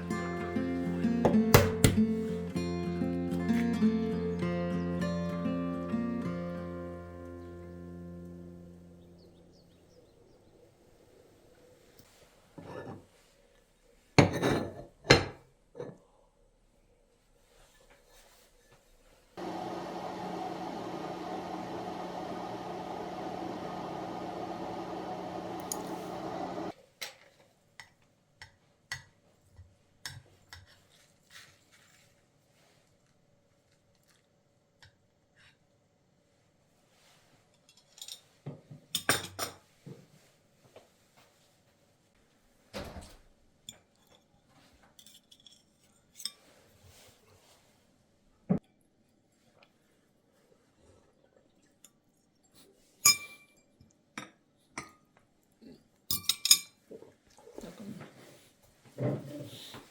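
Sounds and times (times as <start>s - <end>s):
kitchen appliance motor humming: 19.4s - 26.7s
utensils clinking on dishes: 37.6s - 38.4s, 53.0s - 53.6s, 56.1s - 56.8s.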